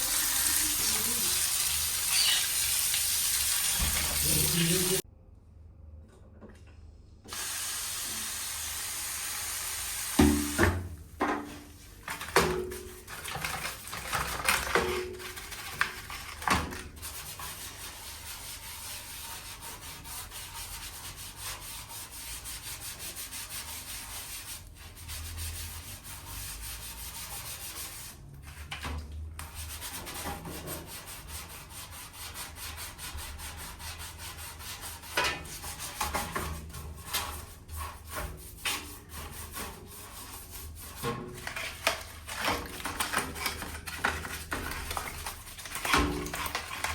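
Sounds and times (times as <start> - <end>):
abrasive rubbing like sanding: 0.1 - 2.6.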